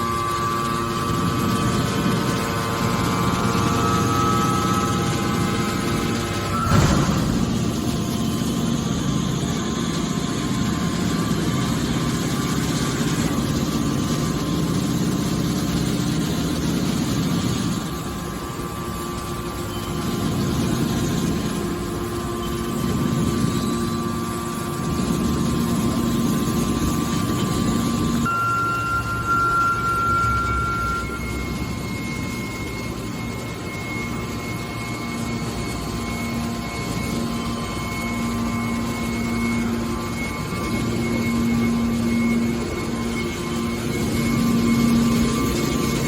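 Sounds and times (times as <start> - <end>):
hydraulic motor and pump humming: 0.0 - 46.0.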